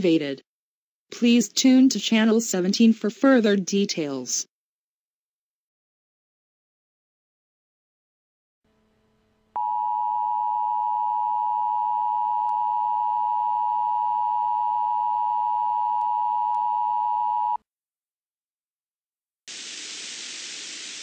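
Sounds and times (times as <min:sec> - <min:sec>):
radio static hiss: 0:19.5 - 0:21.0.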